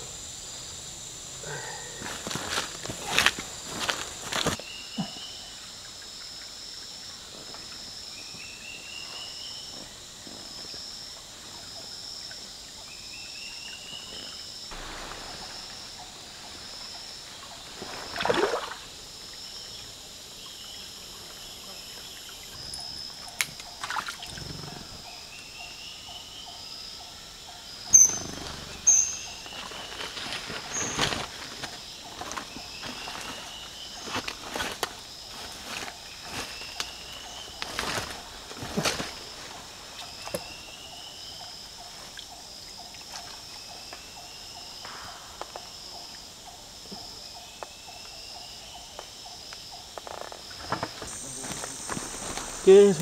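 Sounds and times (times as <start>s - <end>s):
insects trilling: 0.0s - 53.0s
splashes and knocks in water: 17.8s - 18.9s, 23.8s - 24.3s.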